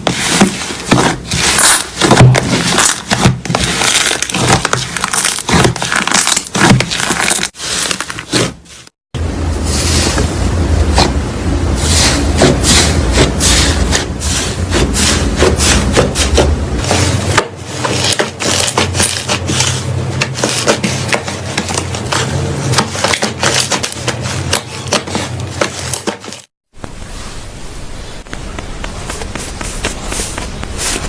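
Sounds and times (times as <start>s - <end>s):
slime crackling and popping: 2.8s - 8.3s.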